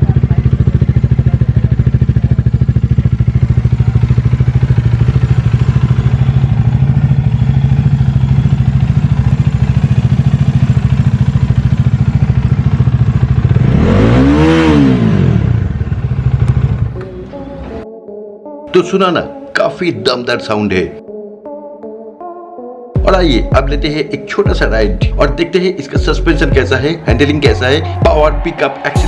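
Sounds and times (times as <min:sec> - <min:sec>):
motorcycle engine idling and revving: 0:00.0 - 0:17.8, 0:26.0 - 0:29.0.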